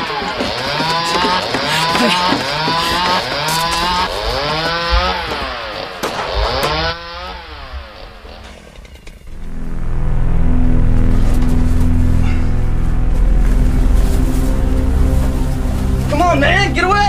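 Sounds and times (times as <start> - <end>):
two-stroke chainsaw revving: 0.0 - 9.5.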